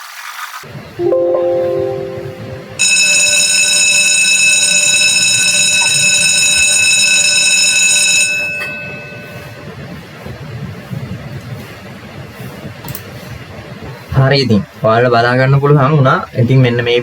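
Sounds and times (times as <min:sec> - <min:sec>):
buzzer-like alarm ring: 0:02.8 - 0:09.2.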